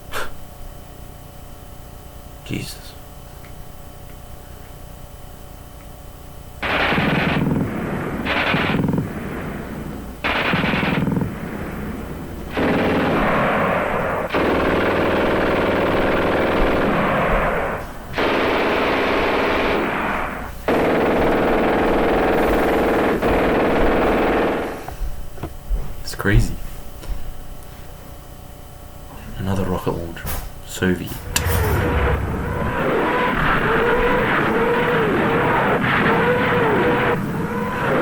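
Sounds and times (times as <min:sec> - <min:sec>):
machine gun firing bursts: 0:06.6 - 0:24.8.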